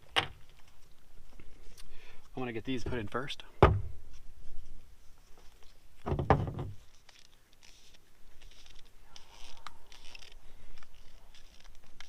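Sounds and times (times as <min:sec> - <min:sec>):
thread tape rustling: 0:06.8 - 0:12.0.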